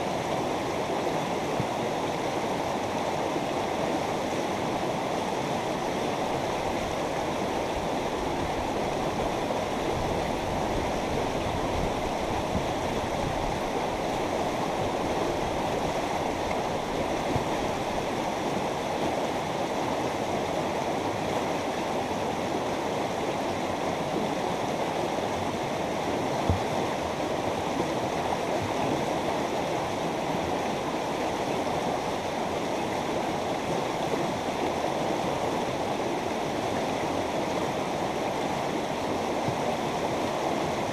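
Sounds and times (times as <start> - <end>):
river water rushing over rocks: 0.0 - 40.9.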